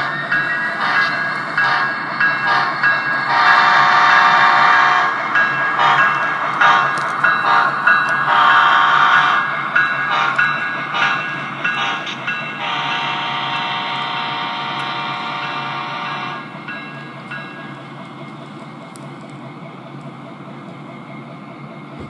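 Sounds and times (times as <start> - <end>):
model locomotive horn: 3.3 - 5.2, 8.3 - 9.4, 11.8 - 16.4.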